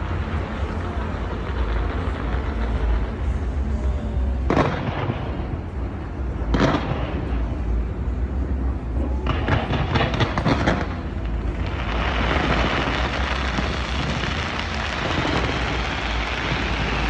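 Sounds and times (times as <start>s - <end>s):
distant firework bursts rumbling: 9.2s - 17.0s.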